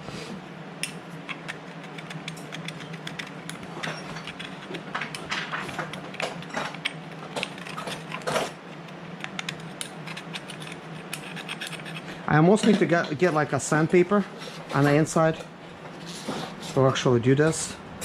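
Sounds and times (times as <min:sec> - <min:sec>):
scraping and rubbing carburetor: 0:01.3 - 0:12.2.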